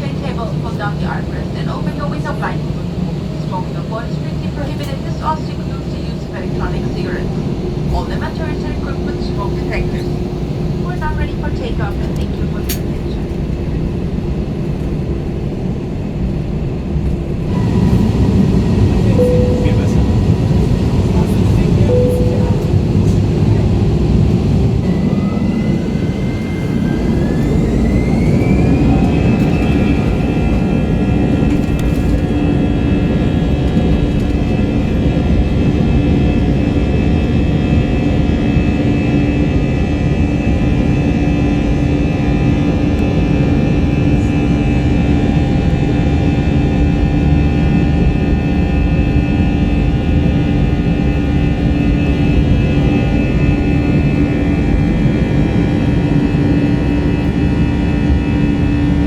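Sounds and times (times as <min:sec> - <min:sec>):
deep rumble: 0:00.0 - 0:59.0
jet engines spooling up: 0:17.3 - 0:34.3.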